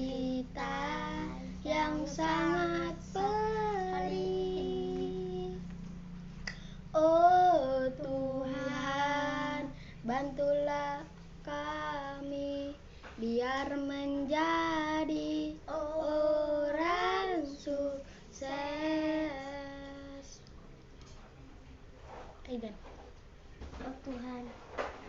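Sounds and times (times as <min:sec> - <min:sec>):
child singing unaccompanied: 0:00.0 - 0:05.7, 0:06.9 - 0:20.4
child breathing: 0:09.7 - 0:10.0.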